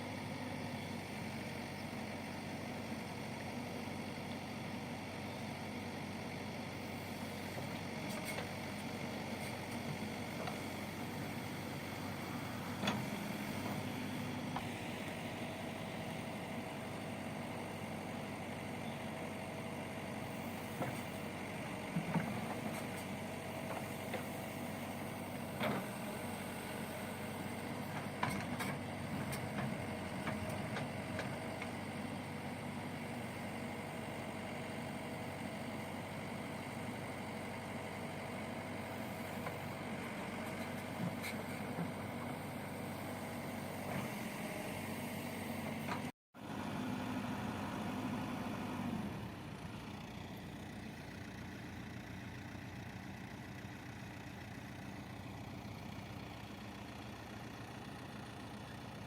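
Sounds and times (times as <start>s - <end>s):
diesel engine running: 0.0s - 59.0s.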